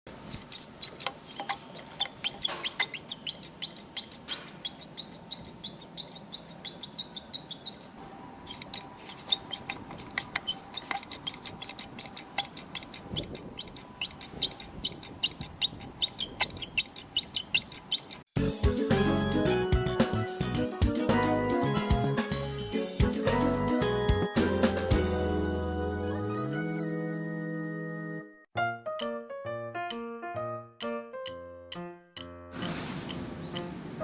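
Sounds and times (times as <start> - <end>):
small bird chirping: 0.3 - 18.2.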